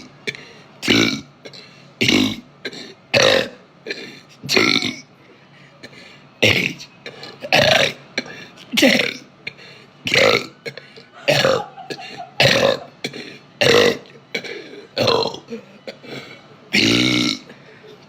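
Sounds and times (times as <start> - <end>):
woman burping: 11.2 - 16.0, 16.8 - 17.6.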